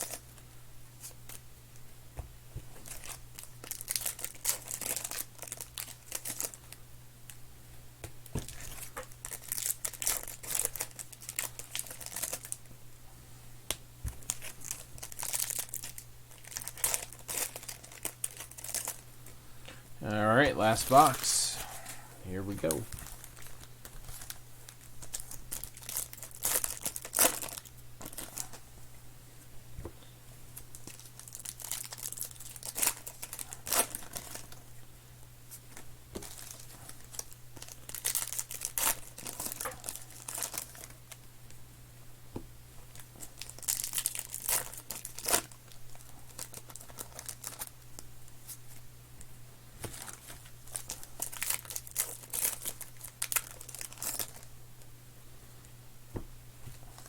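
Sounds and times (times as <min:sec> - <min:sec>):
wrappers crinkling and tearing: 0:00.0 - 0:00.4, 0:02.8 - 0:06.6, 0:08.4 - 0:12.7, 0:14.2 - 0:19.0, 0:22.5 - 0:28.6, 0:30.6 - 0:34.6, 0:36.2 - 0:41.2, 0:42.9 - 0:48.8, 0:49.8 - 0:54.5, 0:56.8 - 0:57.0.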